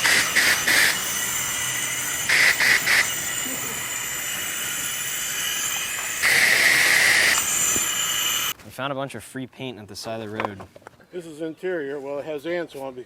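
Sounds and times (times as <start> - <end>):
high-pressure water spray hissing: 0.0 - 4.9, 5.5 - 8.5.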